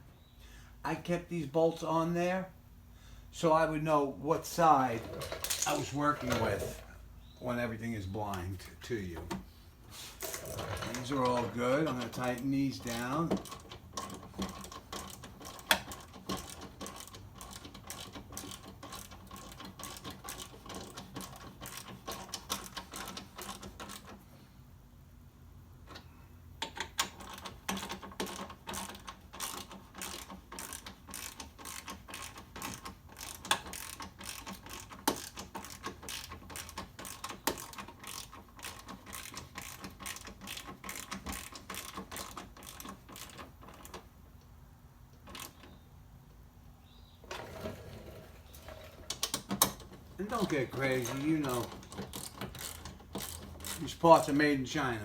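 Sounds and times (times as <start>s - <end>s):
hand ratchet clicking: 10.3s - 24.2s, 26.6s - 44.0s, 49.1s - 55.0s.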